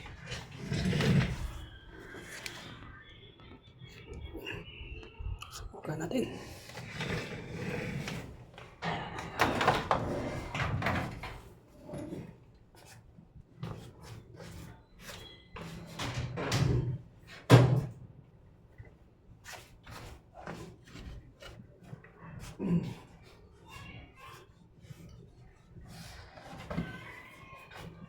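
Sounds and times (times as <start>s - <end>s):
parts clunking and scraping: 0.0s - 2.9s, 6.4s - 13.0s.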